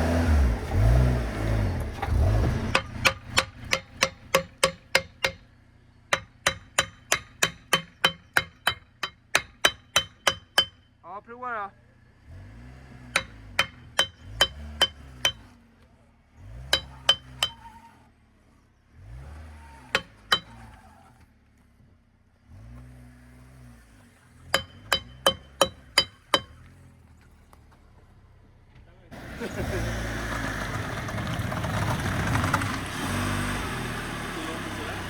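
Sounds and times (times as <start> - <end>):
car engine revving: 0.0 - 5.3, 12.0 - 18.2, 18.9 - 21.3, 22.3 - 27.0, 29.1 - 35.0
sharp metallic clinks: 13.2 - 15.5, 16.7 - 17.8, 24.6 - 26.6.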